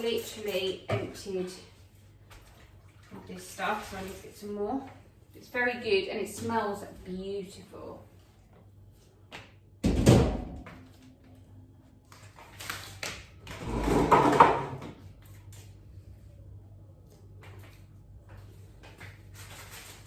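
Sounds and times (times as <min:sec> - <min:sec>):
kitchen clattering and rustling: 0:13.6 - 0:15.0.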